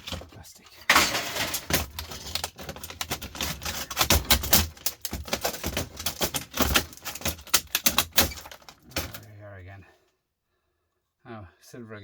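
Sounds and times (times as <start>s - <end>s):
plastic cracking and rattling: 0.0s - 9.4s.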